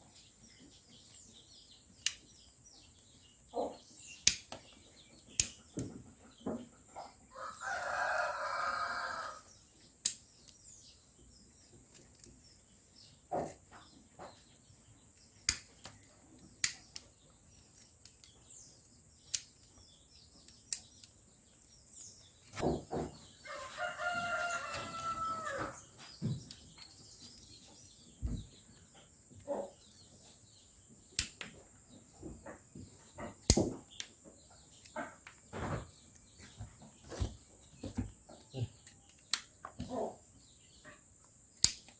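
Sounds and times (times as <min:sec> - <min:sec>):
rooster crowing: 0:07.3 - 0:09.5, 0:23.4 - 0:25.9.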